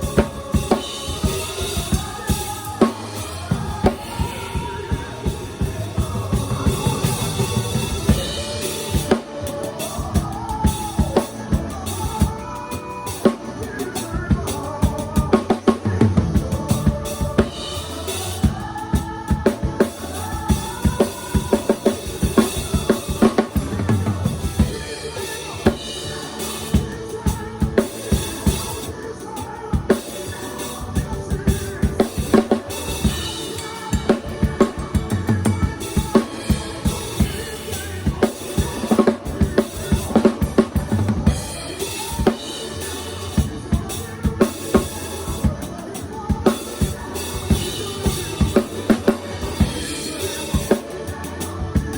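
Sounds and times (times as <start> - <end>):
drum kit groove: 0.0 - 51.9
instruments playing pitched lines: 0.0 - 51.9.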